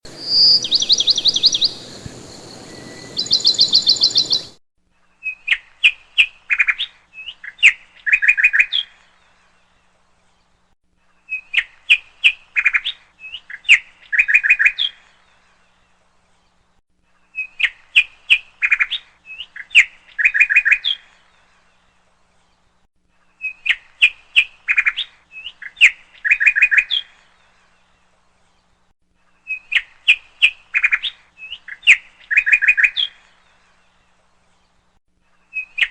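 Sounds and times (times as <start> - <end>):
dense high bird trill: 0.1 - 4.6.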